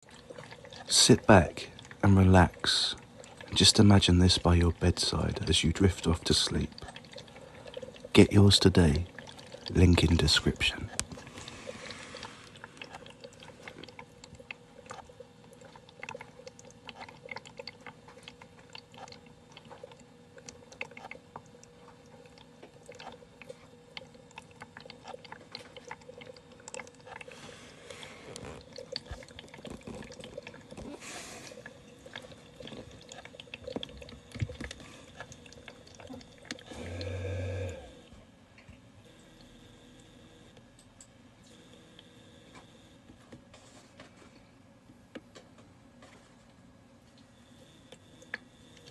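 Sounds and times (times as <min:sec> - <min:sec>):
water drips: 0:00.0 - 0:36.7
diffuser low hum: 0:00.0 - 0:48.9
small clicks and ticks: 0:12.2 - 0:27.3.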